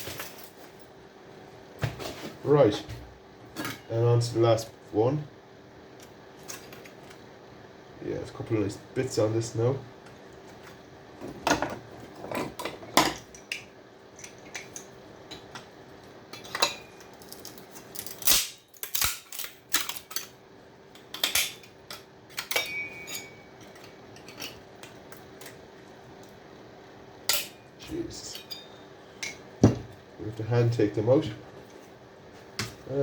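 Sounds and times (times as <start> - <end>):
metal clinks and knocks: 22.4 - 24.6.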